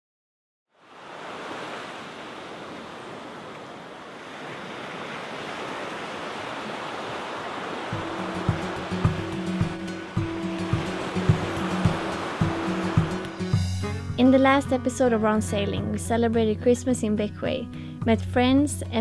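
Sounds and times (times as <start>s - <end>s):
sea waves washing: 0.8s - 14.9s
music with pulsing bass: 8.0s - 16.6s.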